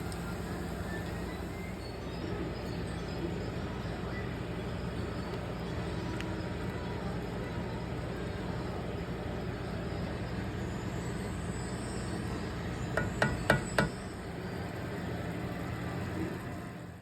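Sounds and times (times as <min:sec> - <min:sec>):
low kitchen hum: 0:00.0 - 0:17.0.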